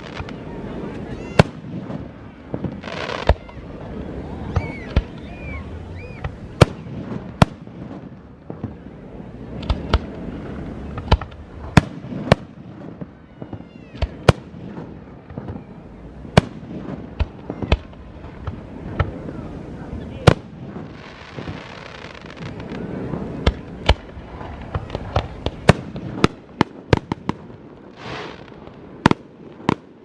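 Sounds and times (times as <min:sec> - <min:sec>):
fireworks bangs: 0:00.0 - 0:30.0
firework whistle: 0:02.8 - 0:06.9.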